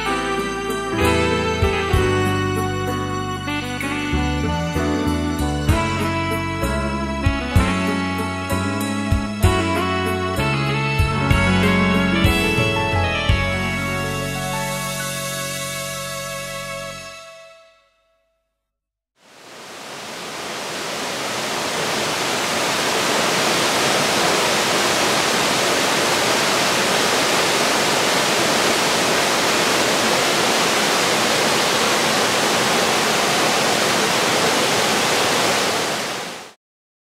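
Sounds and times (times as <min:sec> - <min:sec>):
waterfall rushing: 0:19.2 - 0:36.6.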